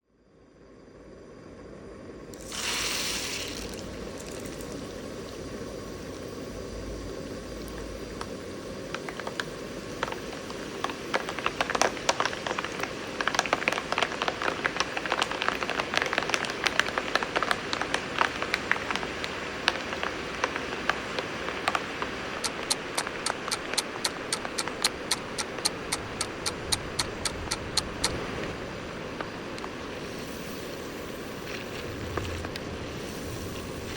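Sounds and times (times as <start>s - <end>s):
beans sizzling in a pan: 2.4s - 23.5s, 29.2s - 33.9s
pops and crackles: 7.6s - 28.6s
rapid even clicks: 22.4s - 28.2s.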